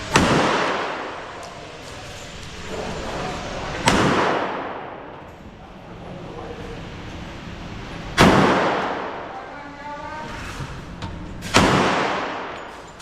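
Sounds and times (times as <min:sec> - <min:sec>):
gunshot with echo: 0:00.1 - 0:01.2, 0:03.8 - 0:04.9, 0:08.2 - 0:09.2, 0:11.4 - 0:12.6.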